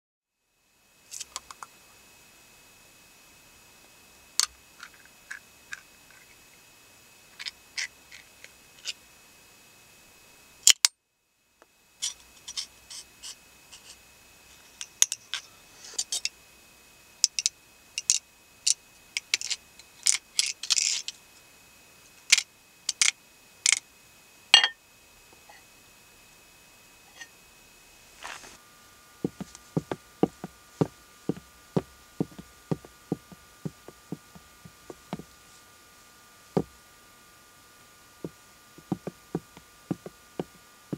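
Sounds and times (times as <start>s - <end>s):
sharp clicks and small taps: 17.2s - 18.2s.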